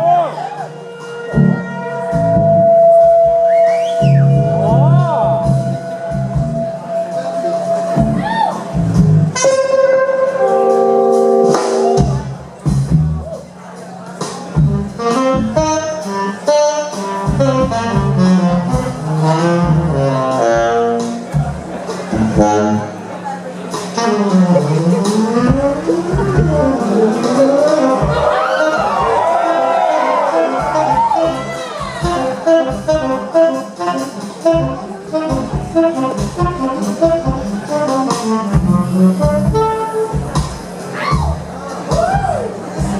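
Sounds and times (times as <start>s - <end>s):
bass: 0.0s - 42.9s
drums: 0.0s - 42.9s
jazz fusion band playing: 0.0s - 42.9s
horn melody: 0.5s - 12.4s, 14.8s - 21.3s, 22.1s - 23.1s, 23.9s - 40.4s
staccato horn section: 23.9s - 40.2s.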